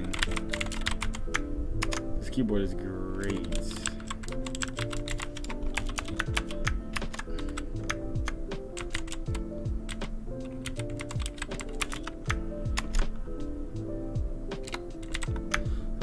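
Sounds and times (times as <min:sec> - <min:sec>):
clicky keyboard typing: 0:00.0 - 0:02.0, 0:03.2 - 0:13.2, 0:14.5 - 0:15.7
background music with bass and beat: 0:05.5 - 0:16.0.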